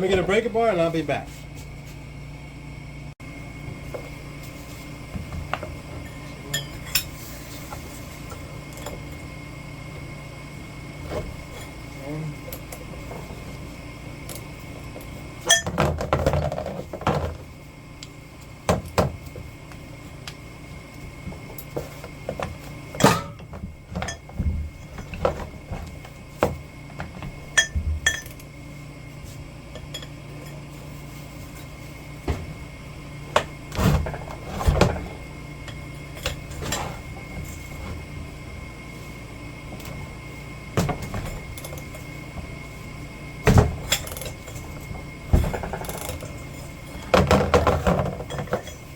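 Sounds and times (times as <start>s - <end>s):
steady low hum: 0.0s - 48.9s
metal tools clanking: 6.0s - 7.1s.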